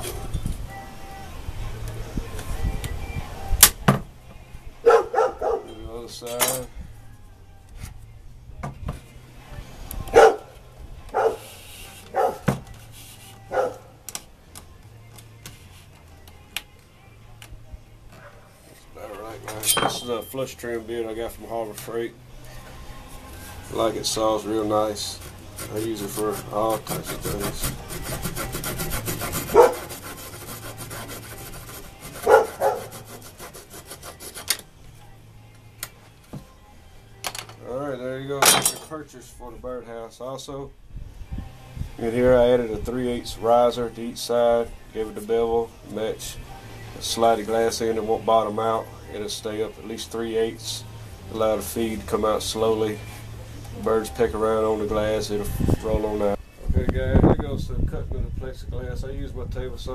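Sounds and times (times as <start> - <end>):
dog barking: 4.8 - 5.7, 10.2 - 10.5, 11.2 - 11.5, 12.1 - 12.5, 13.5 - 13.9, 29.5 - 29.8, 32.2 - 32.9
rasping and scraping on wood: 11.2 - 13.8, 23.1 - 34.7.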